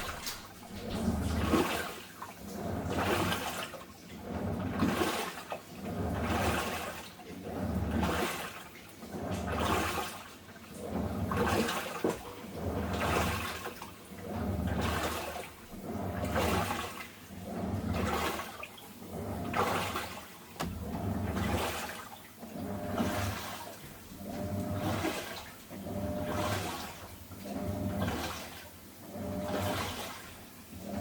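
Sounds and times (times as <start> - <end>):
water sloshing in washing machine: 0.0 - 31.0
low motor hum: 20.6 - 21.8.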